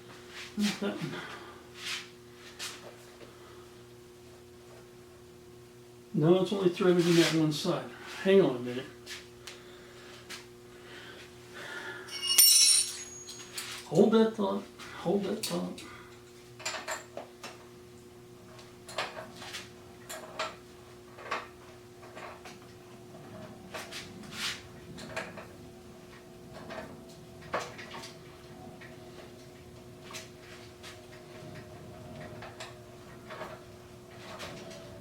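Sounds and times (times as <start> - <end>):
steady low hum: 0.0 - 16.5, 19.7 - 35.0
metallic clinks of hand tools: 12.1 - 14.1.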